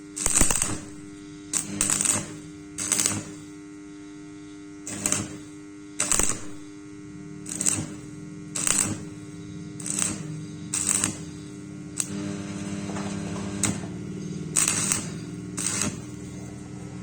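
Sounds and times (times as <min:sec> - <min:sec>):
welding arc crackle and hiss: 0:00.0 - 0:17.0
welding machine humming: 0:00.0 - 0:17.0
sharp clicks: 0:08.6 - 0:09.0.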